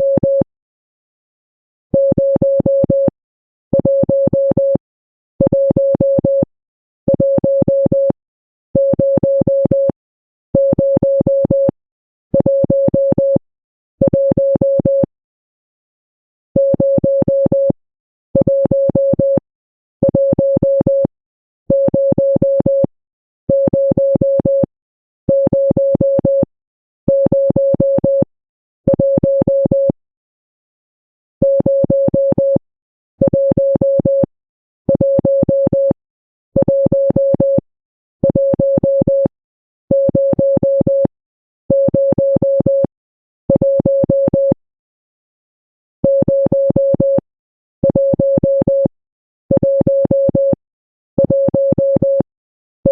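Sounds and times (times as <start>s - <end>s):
electronic morse code beeps: 18.4s - 19.4s, 34.9s - 36.0s, 36.6s - 37.6s, 38.2s - 39.3s, 41.7s - 42.9s, 51.2s - 52.3s.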